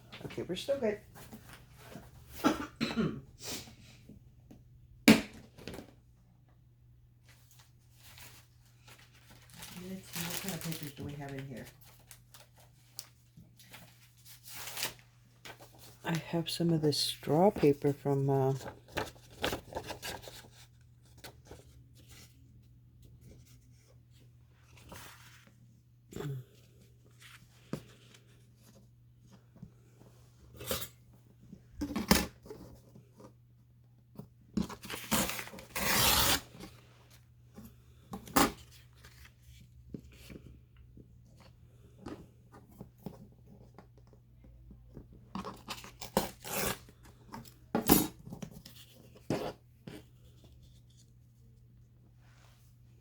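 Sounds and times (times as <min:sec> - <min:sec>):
person coughing: 0:02.4 - 0:03.4.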